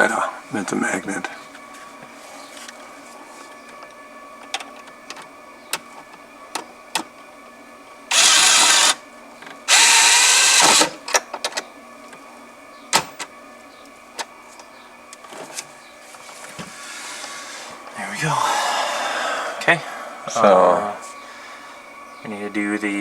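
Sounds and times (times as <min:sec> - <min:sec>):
electric screwdriver running: 0:08.1 - 0:09.0, 0:09.7 - 0:11.1.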